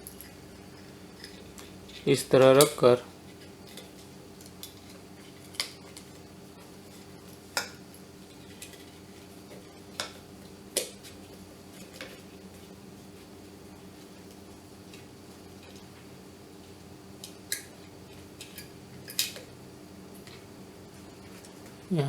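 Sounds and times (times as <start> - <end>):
faint steady hum: 0.0 - 22.0.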